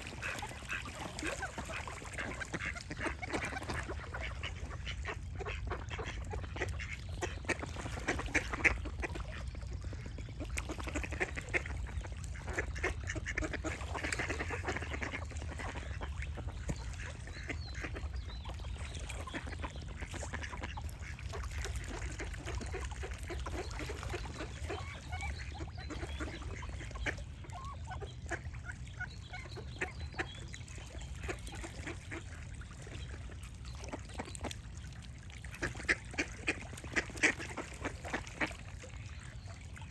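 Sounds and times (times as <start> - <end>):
ducks quacking: 0.0 - 33.3, 35.5 - 39.2
birds singing: 14.0 - 20.5, 22.6 - 32.3.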